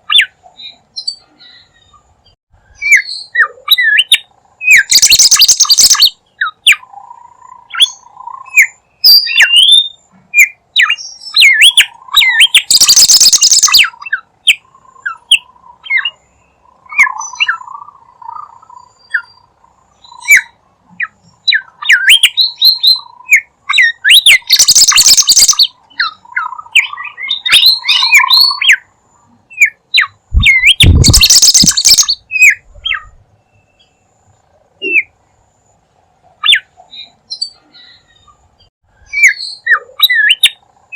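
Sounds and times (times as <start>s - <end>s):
bird chirps and whistles: 2.7s - 6.8s, 7.7s - 16.2s, 21.5s - 28.8s, 29.5s - 33.8s, 39.0s - 40.6s.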